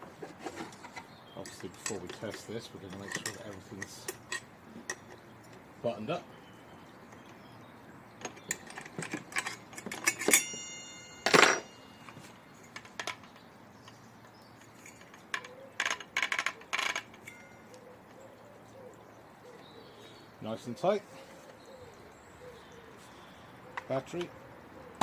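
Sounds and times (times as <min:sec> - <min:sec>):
tools clicking and clinking: 0:01.4 - 0:05.6, 0:08.2 - 0:11.8, 0:14.6 - 0:17.9
short metallic ring: 0:10.0 - 0:12.8, 0:17.2 - 0:17.8.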